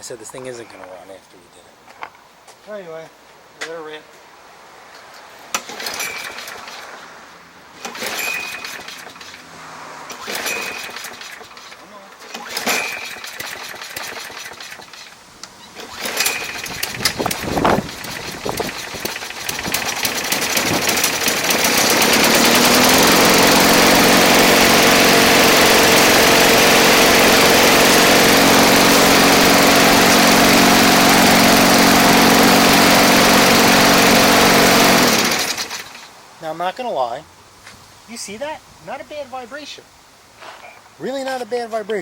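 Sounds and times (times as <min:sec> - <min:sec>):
lawn mower engine running: 0:05.6 - 0:07.0, 0:07.8 - 0:36.1.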